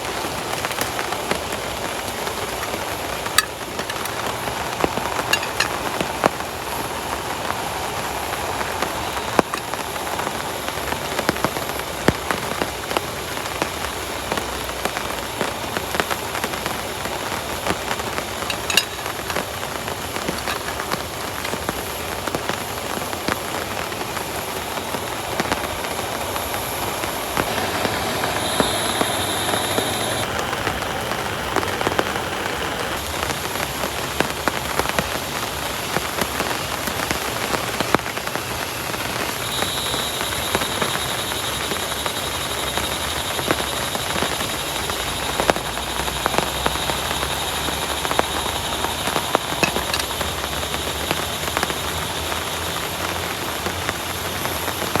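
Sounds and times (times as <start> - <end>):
heavy rain falling: 0.0 - 55.0
raindrops tapping: 0.0 - 55.0.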